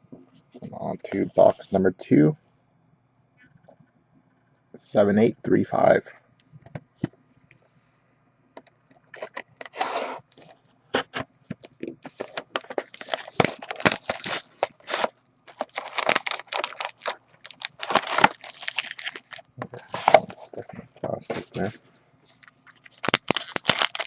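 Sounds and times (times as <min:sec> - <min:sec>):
plastic shrink wrap crackling: 0:12.0 - 0:20.4, 0:22.3 - 0:24.0.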